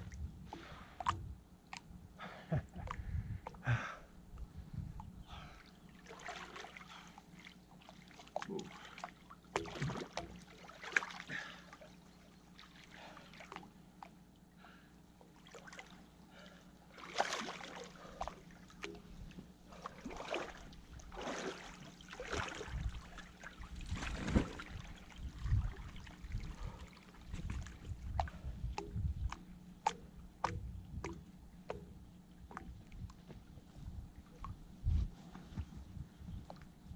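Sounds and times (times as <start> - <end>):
river water splashing: 6.0 - 13.8, 16.9 - 19.0, 19.7 - 27.3.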